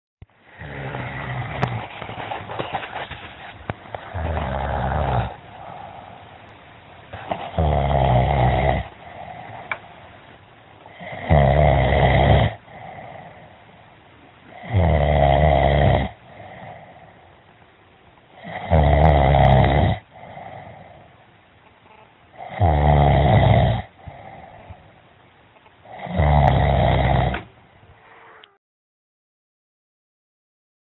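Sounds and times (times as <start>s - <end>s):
quiet breathing: 0.4s - 7.7s, 8.8s - 11.3s, 12.5s - 14.7s, 16.1s - 17.6s, 20.0s - 22.5s, 23.8s - 28.6s
man snoring: 0.6s - 1.9s, 4.1s - 6.1s, 7.2s - 9.7s, 10.9s - 13.4s, 14.5s - 16.9s, 18.4s - 21.0s, 22.4s - 24.6s, 25.9s - 27.5s.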